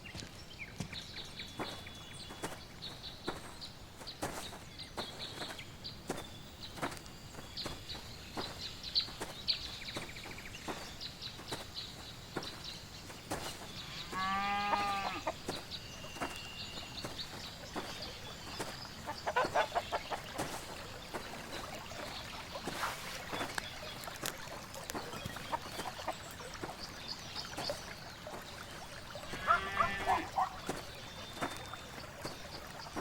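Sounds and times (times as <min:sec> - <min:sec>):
drawn-out chicken call: 0:13.8 - 0:15.5, 0:19.0 - 0:20.6, 0:29.3 - 0:30.6
chickens clucking: 0:17.0 - 0:26.8.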